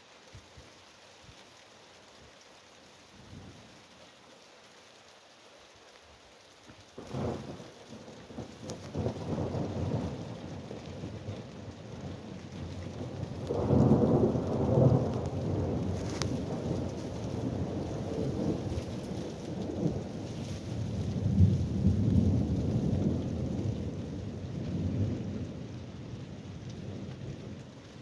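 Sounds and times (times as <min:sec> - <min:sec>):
light rain falling: 0:00.0 - 0:28.0
thunder rumbling: 0:07.0 - 0:27.7.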